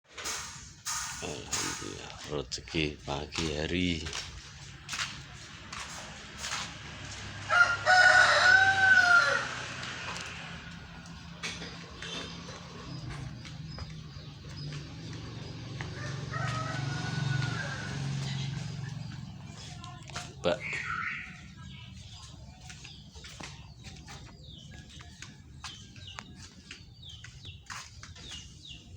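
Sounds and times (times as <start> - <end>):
rooster crowing: 7.4 - 10.5, 15.5 - 18.9
small birds chirping: 10.2 - 28.9.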